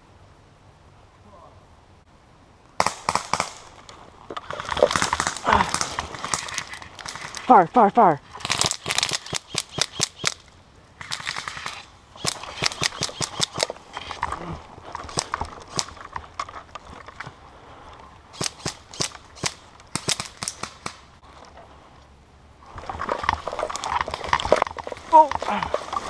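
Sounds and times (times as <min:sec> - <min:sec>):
airsoft guns firing: 0:02.8 - 0:03.7, 0:04.4 - 0:07.4, 0:11.0 - 0:13.8, 0:18.4 - 0:21.0.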